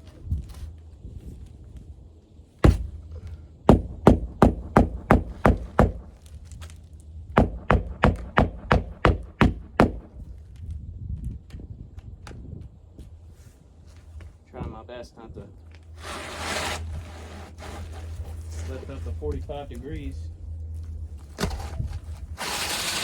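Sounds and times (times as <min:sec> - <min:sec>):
hammer striking roofing nails: 0:02.6 - 0:03.0, 0:03.7 - 0:06.1, 0:07.4 - 0:10.2.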